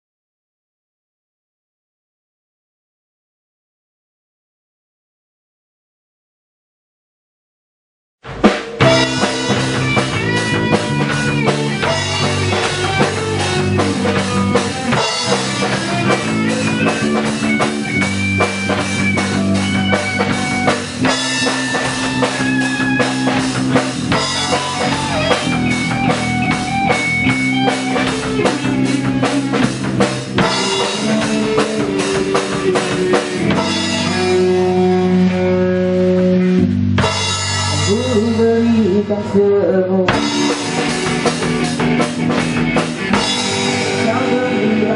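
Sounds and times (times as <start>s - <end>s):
steady drum kit beat: 8.2s - 35.6s, 36.2s - 39.3s, 40.0s - 44.9s
electric guitar: 8.3s - 44.9s.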